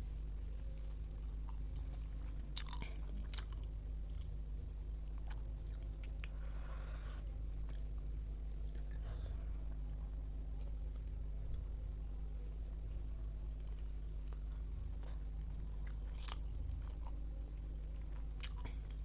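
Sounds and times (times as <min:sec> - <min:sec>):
steady low hum: 0:00.0 - 0:19.0
person chewing food: 0:00.6 - 0:09.3, 0:13.5 - 0:19.0.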